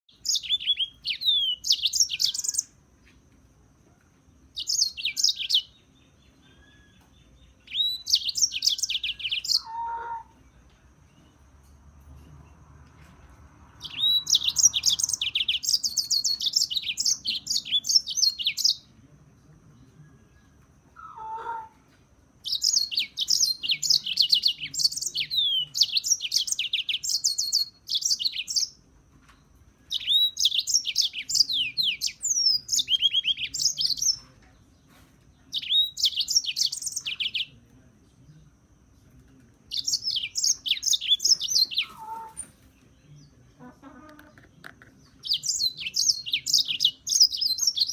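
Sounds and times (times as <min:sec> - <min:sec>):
bird twittering trills: 0:00.1 - 0:02.8, 0:04.4 - 0:11.6, 0:13.7 - 0:18.9, 0:22.4 - 0:28.8, 0:29.8 - 0:34.3, 0:35.4 - 0:37.6, 0:39.7 - 0:42.7, 0:45.2 - 0:47.9
short lower bird chirp: 0:00.1 - 0:02.8, 0:04.5 - 0:10.3, 0:13.8 - 0:18.9.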